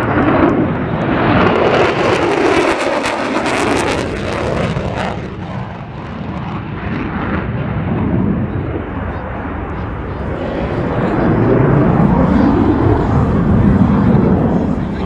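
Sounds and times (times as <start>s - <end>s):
jet engine roaring: 0.0s - 15.0s.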